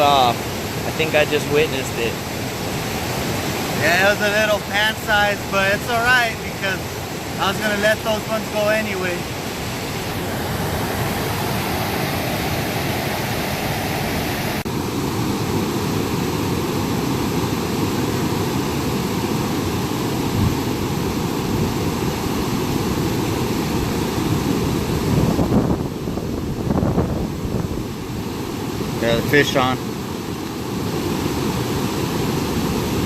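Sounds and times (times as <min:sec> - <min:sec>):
river water flowing: 0:00.0 - 0:33.0
wind on microphone: 0:20.1 - 0:30.0.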